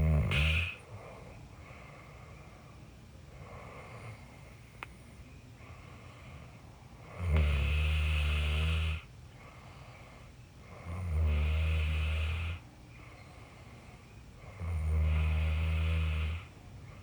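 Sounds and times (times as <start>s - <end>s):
person snoring: 0.0s - 0.8s, 14.6s - 16.4s.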